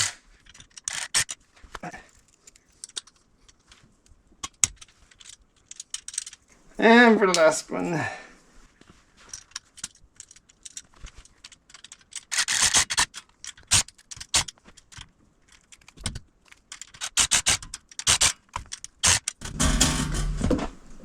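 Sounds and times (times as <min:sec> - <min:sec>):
small metal parts clinking: 0:00.0 - 0:03.8, 0:04.7 - 0:06.5.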